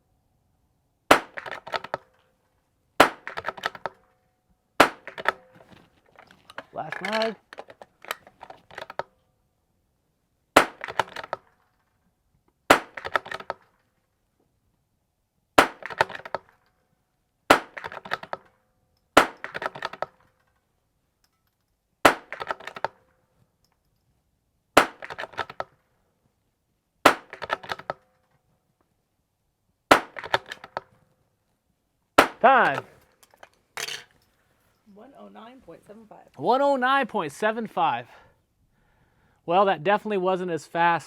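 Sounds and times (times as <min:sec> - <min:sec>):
rifle shots cracking: 0:01.1 - 0:02.0, 0:03.0 - 0:03.9, 0:04.8 - 0:05.6, 0:06.7 - 0:07.4, 0:10.6 - 0:11.4, 0:12.7 - 0:13.6, 0:15.6 - 0:16.4, 0:17.5 - 0:18.3, 0:19.2 - 0:20.0, 0:22.0 - 0:22.8, 0:24.8 - 0:25.6, 0:27.0 - 0:27.9, 0:29.9 - 0:30.8, 0:32.2 - 0:33.0.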